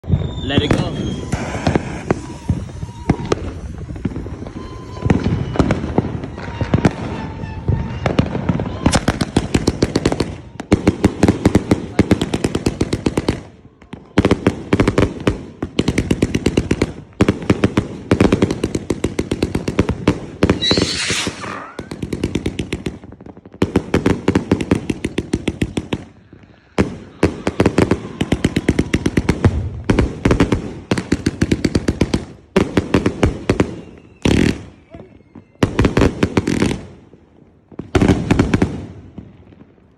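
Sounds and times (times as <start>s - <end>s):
firecrackers banging: 0.0s - 39.7s
hissing whistle: 0.1s - 8.0s, 20.5s - 22.0s, 33.7s - 35.7s.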